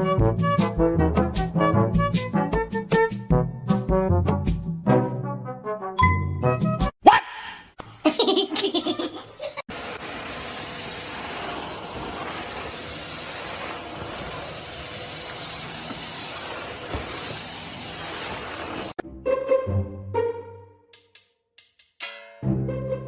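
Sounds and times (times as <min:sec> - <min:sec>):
laugh-like voiced sound: 0:07.0 - 0:09.6.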